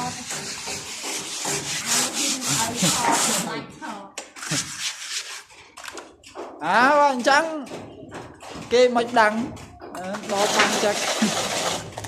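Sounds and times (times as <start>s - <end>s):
hand tool rasping a surface: 0.0s - 3.6s, 4.4s - 5.7s.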